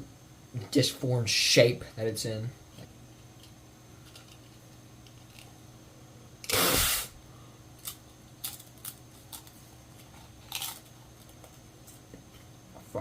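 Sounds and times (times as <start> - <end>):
potato crisp crunching: 7.8 - 11.6.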